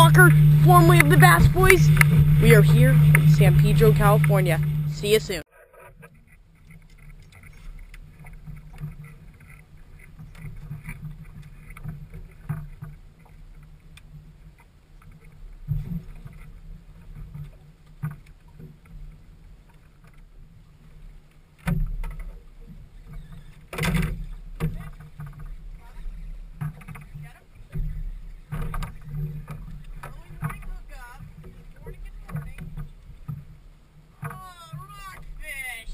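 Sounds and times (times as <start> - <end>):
loud thumps: 0.0 - 5.3
boat engine drone: 0.0 - 35.9
water against hull: 0.0 - 35.9.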